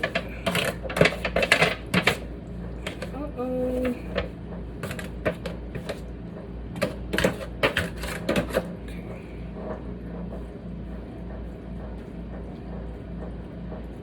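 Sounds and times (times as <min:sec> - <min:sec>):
steady low hum: 0:00.0 - 0:14.0
kitchen clicks and knocks: 0:06.8 - 0:08.7.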